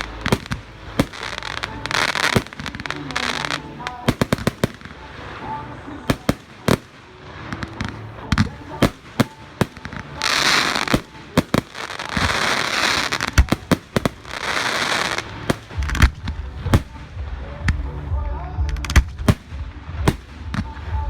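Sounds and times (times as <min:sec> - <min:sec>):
fireworks hissing crackle: 0:00.0 - 0:17.8
fireworks bangs: 0:00.0 - 0:17.9, 0:18.7 - 0:21.0.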